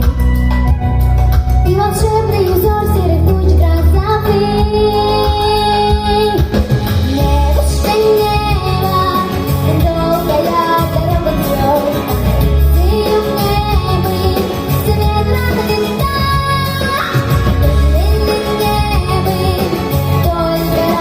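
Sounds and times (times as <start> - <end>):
instrumental accompaniment: 0.0 - 21.0
girl singing: 1.7 - 6.5, 7.1 - 21.0.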